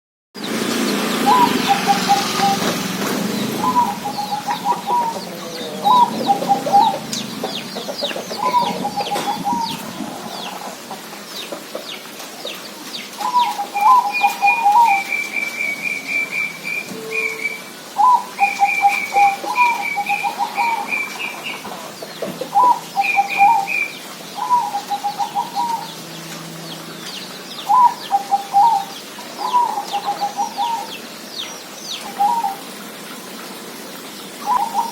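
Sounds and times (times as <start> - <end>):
dove cooing in trilled phrases: 1.2 - 11.1, 13.1 - 21.6, 22.4 - 26.0, 27.6 - 31.0, 32.0 - 32.9, 34.4 - 34.9.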